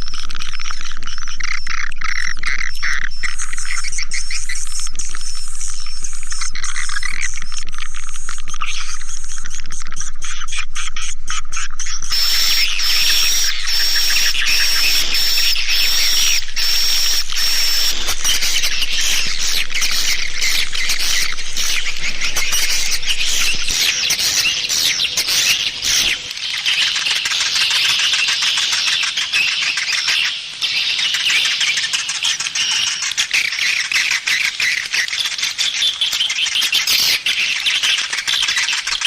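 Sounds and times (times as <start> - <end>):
steady high tone: 0.0 - 26.3
swiftlets twittering and chirping: 0.0 - 39.0.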